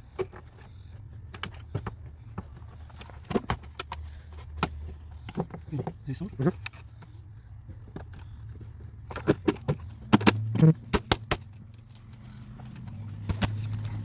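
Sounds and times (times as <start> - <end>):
hand tools clicking and knocking: 0.0 - 14.0.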